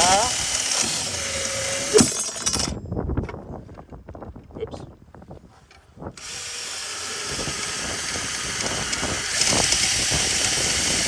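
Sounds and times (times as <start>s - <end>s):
power drill boring hole: 0.0s - 2.7s, 6.2s - 11.0s.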